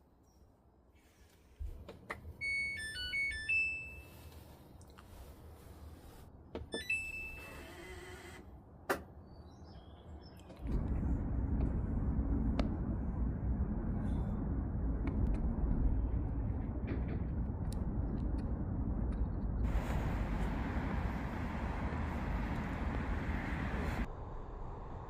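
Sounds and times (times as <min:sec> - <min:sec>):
steady low rumble: 0:10.0 - 0:25.0.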